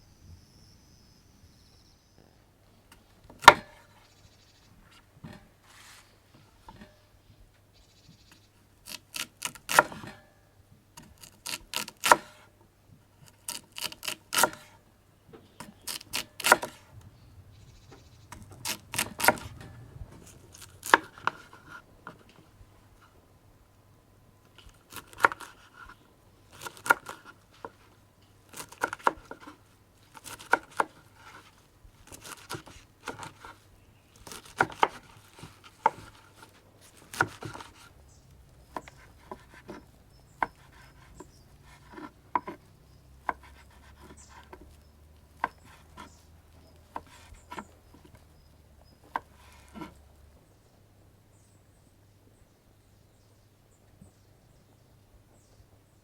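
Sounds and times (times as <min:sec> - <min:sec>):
knife chopping on cutting board: 0:08.9 - 0:10.1, 0:15.9 - 0:16.9, 0:17.9 - 0:21.8, 0:30.2 - 0:31.4, 0:34.2 - 0:37.9, 0:38.7 - 0:42.6, 0:43.2 - 0:44.7.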